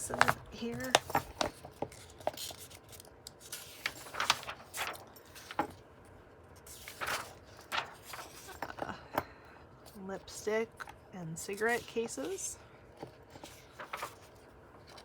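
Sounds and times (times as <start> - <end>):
book pages rustling: 0.0 - 5.8, 6.6 - 8.7, 13.0 - 15.0.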